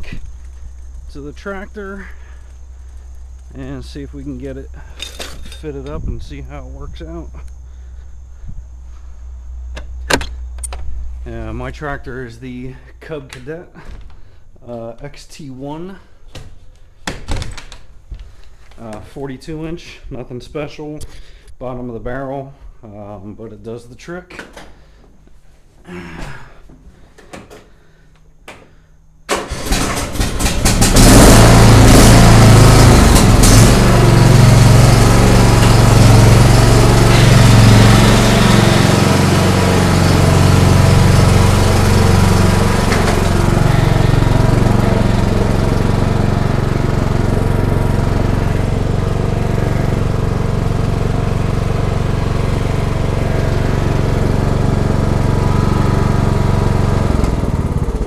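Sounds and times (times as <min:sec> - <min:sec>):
riding mower engine running: 0:00.0 - 0:14.4, 0:29.3 - 0:58.0.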